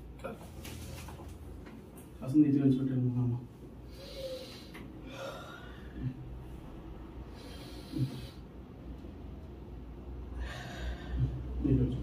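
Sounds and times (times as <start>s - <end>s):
person breathing deeply: 3.8s - 6.5s, 7.2s - 8.6s, 10.3s - 11.6s.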